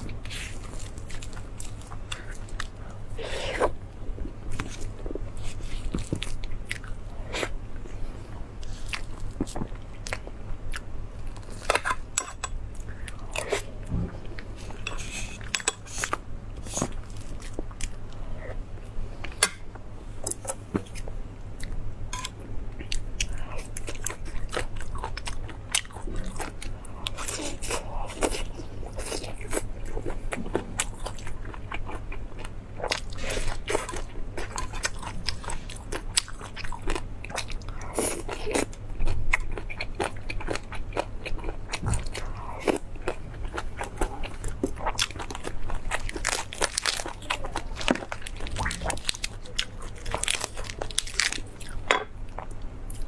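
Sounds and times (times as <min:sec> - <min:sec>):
steady low hum: 0:00.0 - 0:53.0
biting crunching and chewing meat: 0:22.2 - 0:51.8.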